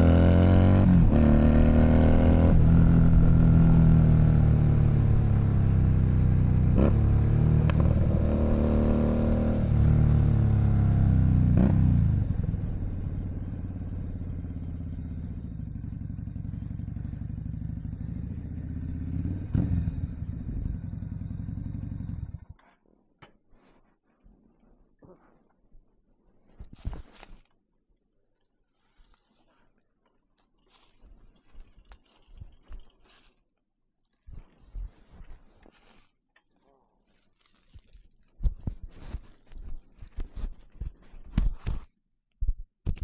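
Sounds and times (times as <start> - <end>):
motorcycle engine revving and idling: 0.0 - 22.7.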